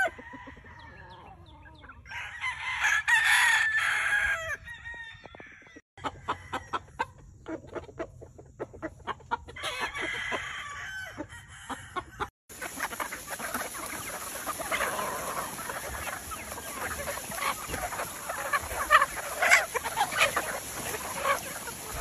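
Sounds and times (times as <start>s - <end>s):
rooster crowing: 0.0s - 1.3s, 2.1s - 6.8s, 9.6s - 12.3s, 14.6s - 17.0s
chickens clucking: 0.0s - 22.0s.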